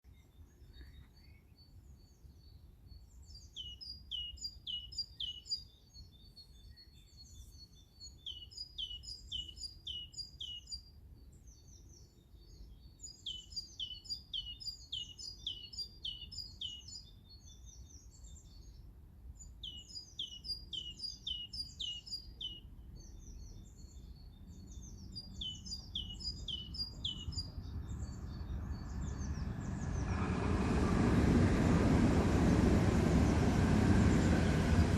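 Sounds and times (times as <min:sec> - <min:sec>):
songbird singing: 0:00.0 - 0:34.9
low rumble: 0:27.1 - 0:34.9.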